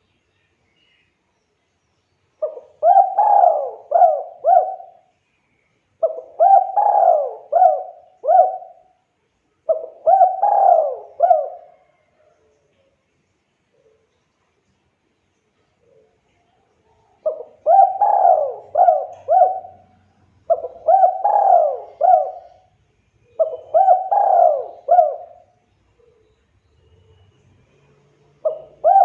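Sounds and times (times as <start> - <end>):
dove cooing: 2.4 - 5.1, 6.0 - 9.0, 9.7 - 12.3, 17.2 - 26.3, 27.0 - 29.0.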